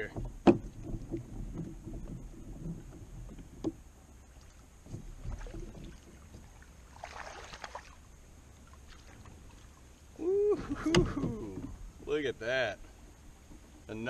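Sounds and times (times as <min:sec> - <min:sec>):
knocks on a kayak: 0:00.0 - 0:02.2
light water noise: 0:00.0 - 0:14.0
water splash: 0:04.3 - 0:08.1.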